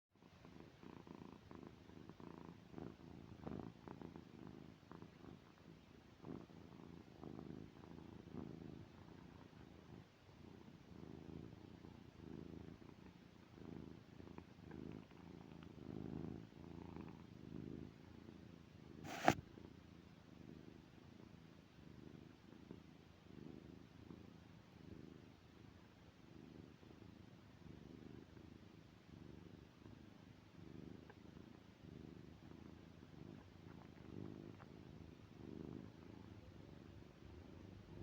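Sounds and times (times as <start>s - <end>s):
cat snoring: 6.2s - 17.9s, 19.0s - 19.4s, 30.6s - 38.0s.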